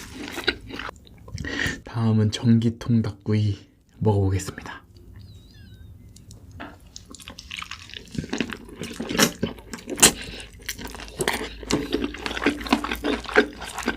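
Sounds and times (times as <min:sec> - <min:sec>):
wet chewing and lip-smacking: 0:00.0 - 0:01.5, 0:06.1 - 0:13.9.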